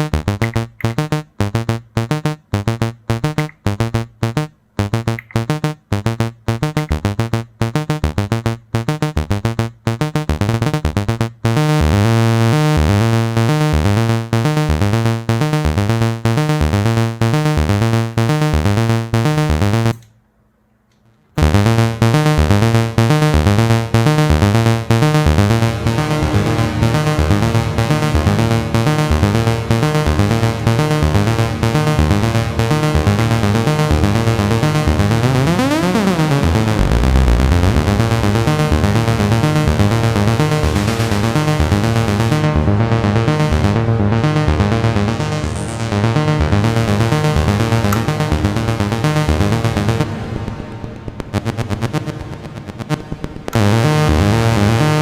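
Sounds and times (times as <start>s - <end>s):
synthesizer arpeggio: 0.0s - 10.8s, 21.5s - 41.2s.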